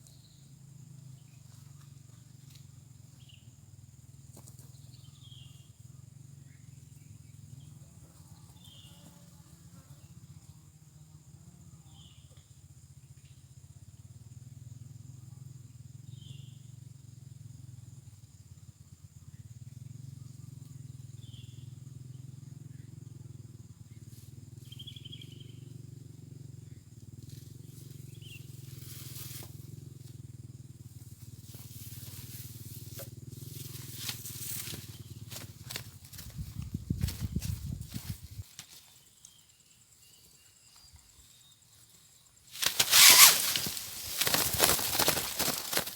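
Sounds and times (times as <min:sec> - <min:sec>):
rustling: 0:42.6 - 0:45.9.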